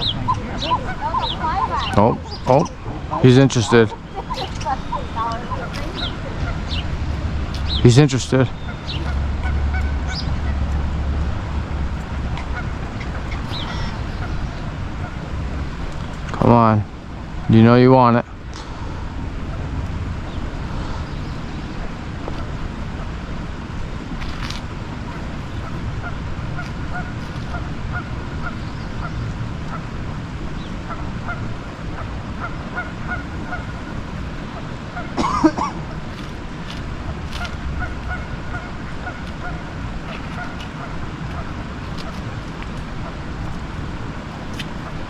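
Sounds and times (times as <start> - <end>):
loud honking bird call: 0.0 - 15.9, 30.6 - 36.1, 37.0 - 42.4
distant traffic: 0.0 - 45.0
wind: 0.0 - 45.0.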